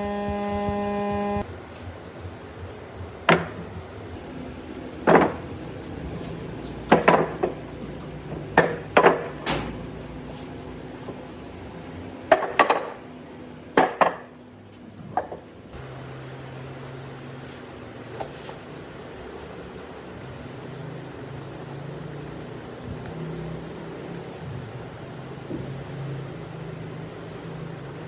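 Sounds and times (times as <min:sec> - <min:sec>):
tools and wood knocking: 0:00.0 - 0:01.4, 0:02.6 - 0:04.0, 0:05.0 - 0:05.5, 0:06.8 - 0:10.2, 0:12.3 - 0:13.0, 0:15.2 - 0:15.4.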